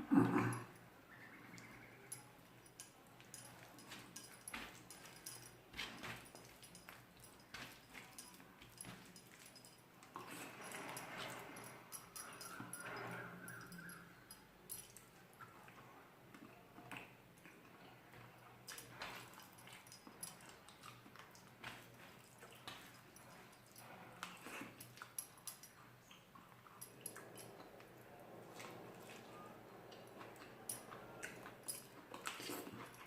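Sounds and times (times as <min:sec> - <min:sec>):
soft chewing and mouth smacks: 0:13.6 - 0:33.0.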